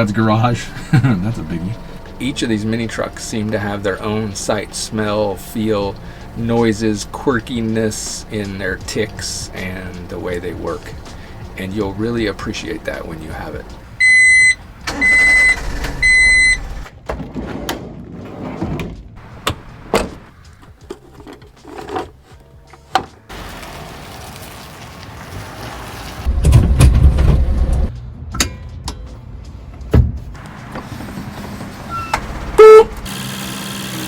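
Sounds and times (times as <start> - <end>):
electronic beep: 31.9 - 32.9.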